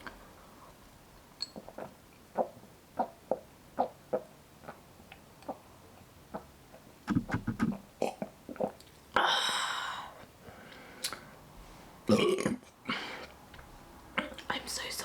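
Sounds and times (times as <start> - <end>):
person swallowing: 7.1 - 8.3
loud burp: 12.1 - 12.6.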